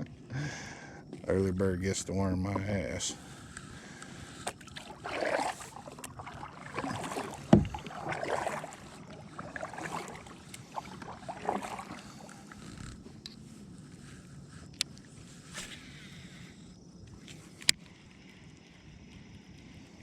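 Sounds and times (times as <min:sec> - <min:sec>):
paddle strokes swishing through water: 0:02.4 - 0:20.0
hollow knock on kayak hull: 0:07.0 - 0:08.7.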